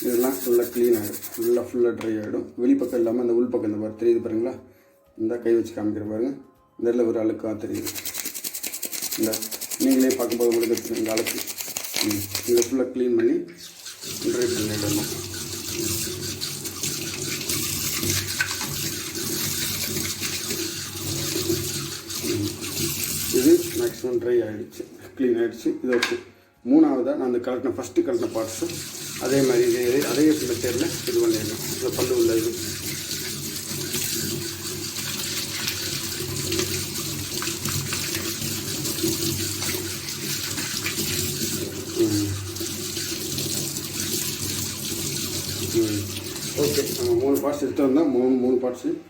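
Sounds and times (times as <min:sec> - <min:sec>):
scrubbing plastic: 0:00.0 - 0:01.6, 0:07.7 - 0:12.7, 0:13.6 - 0:24.0, 0:28.3 - 0:43.1
tap water running over mesh: 0:07.8 - 0:12.7, 0:13.6 - 0:24.0, 0:28.2 - 0:47.4.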